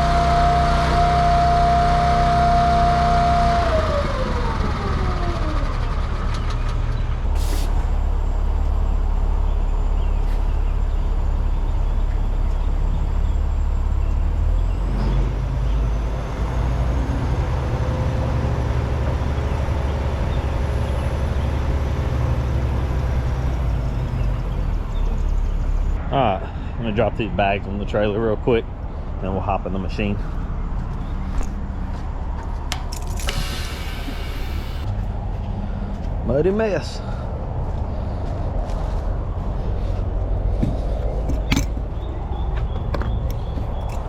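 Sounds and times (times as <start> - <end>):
truck diesel engine idling: 0.0 - 44.0
air hiss burst: 7.4 - 7.8, 33.2 - 34.8.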